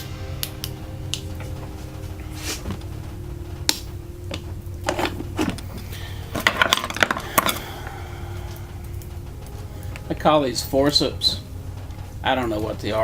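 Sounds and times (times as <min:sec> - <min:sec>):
hand tools clicking and clattering: 0:03.7 - 0:07.8.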